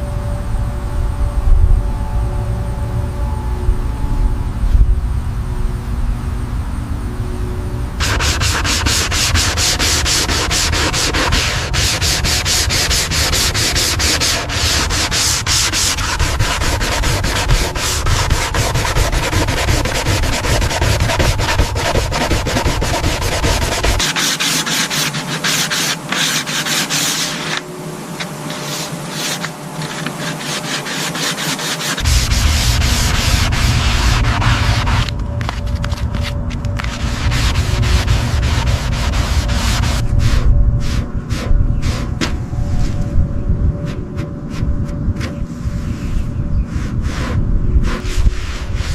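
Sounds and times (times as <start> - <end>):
sanding strokes: 8.0 - 35.1, 36.9 - 42.2, 46.7 - 48.9
deep rumble: 32.0 - 48.9.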